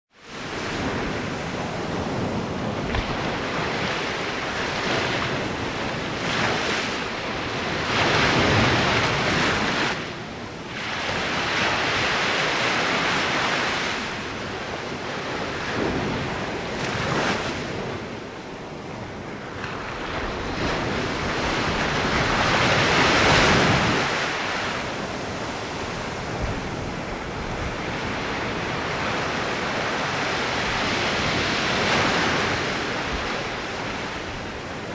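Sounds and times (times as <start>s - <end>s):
ocean waves washing ashore: 0.1s - 34.9s.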